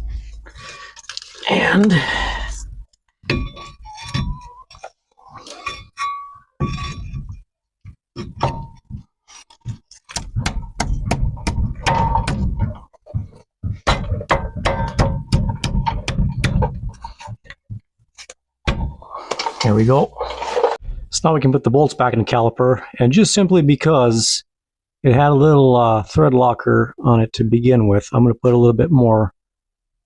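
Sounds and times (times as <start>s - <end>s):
metal knocks and clinks: 3.2s - 7.4s.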